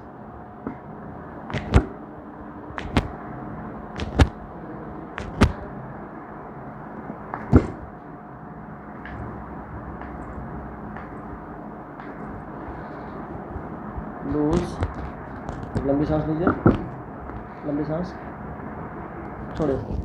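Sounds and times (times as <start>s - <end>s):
sharp slaps in pairs: 1.5s - 2.0s, 2.7s - 3.2s, 4.0s - 4.5s, 5.2s - 5.7s.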